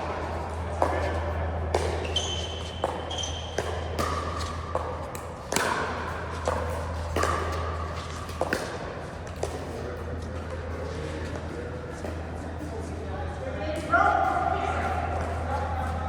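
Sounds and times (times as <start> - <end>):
steady low hum: 0.0 - 16.0
pickleball paddle pops: 3.6 - 7.6.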